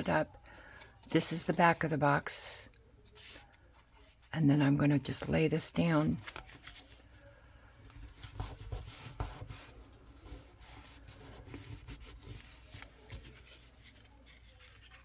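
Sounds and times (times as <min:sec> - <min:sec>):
paper rustling and rubbing: 0:02.9 - 0:15.0.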